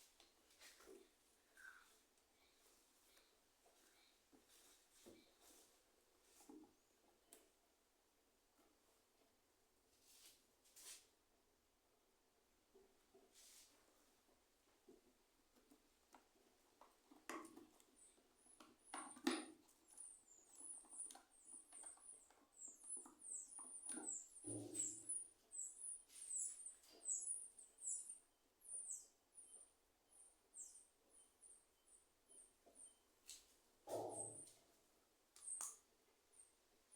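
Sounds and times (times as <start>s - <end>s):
faint bird chirping: 0.9s - 5.7s, 17.9s - 36.9s.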